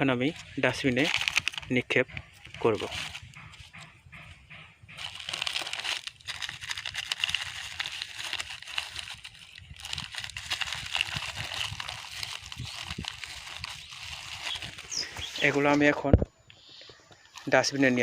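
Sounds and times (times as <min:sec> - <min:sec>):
plastic crinkling and rustling: 0:00.2 - 0:03.2, 0:05.0 - 0:15.8.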